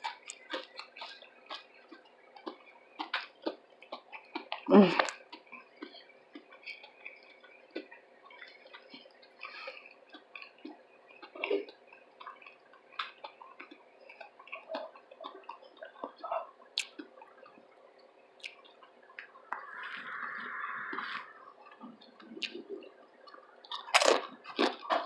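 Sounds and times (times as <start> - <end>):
lip smacks: 0.0 - 17.6, 18.4 - 25.0
wet chewing: 0.0 - 25.0
mouth clicks: 8.6 - 17.2, 18.4 - 24.9.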